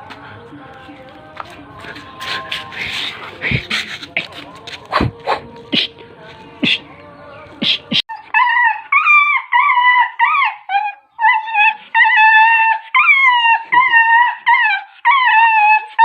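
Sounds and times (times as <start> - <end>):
dog whining: 7.9 - 16.0.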